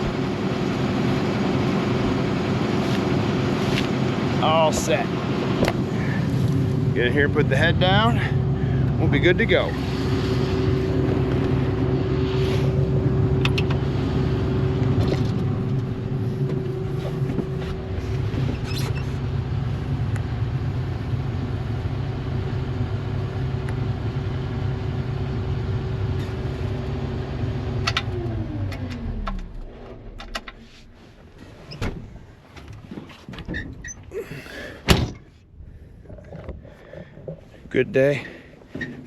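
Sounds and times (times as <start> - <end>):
machinery whine: 0.0 - 30.8
combine harvester engine drone: 0.0 - 33.0.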